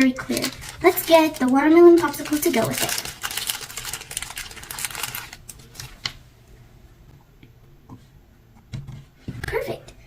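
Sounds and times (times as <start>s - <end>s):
small items clicking and rustling: 0.2s - 5.9s.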